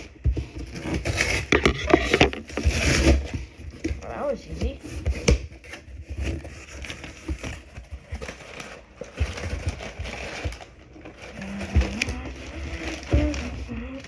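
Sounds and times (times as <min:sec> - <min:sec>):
packaging rustling: 0:00.0 - 0:14.0
clicks and knocks: 0:01.3 - 0:02.8.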